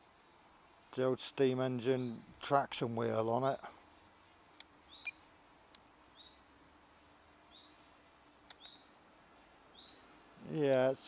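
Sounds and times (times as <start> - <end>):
faint clicks: 4.6 - 4.8, 8.4 - 8.8
bird rising chirp: 4.9 - 5.2.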